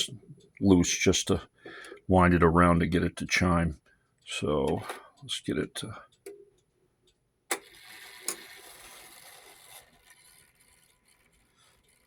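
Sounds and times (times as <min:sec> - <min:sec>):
clock works running: 0:07.1 - 0:12.0
clock striking: 0:07.5 - 0:12.0.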